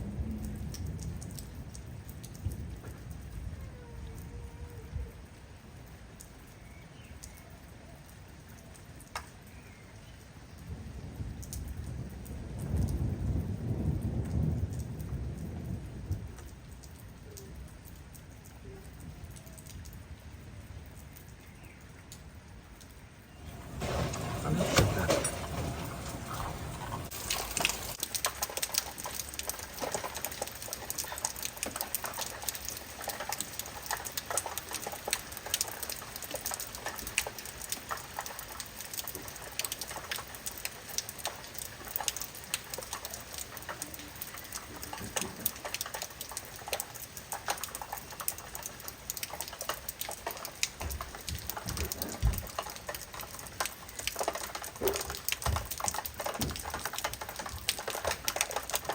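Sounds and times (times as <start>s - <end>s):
heavy rain on hard surface: 0.0s - 58.9s.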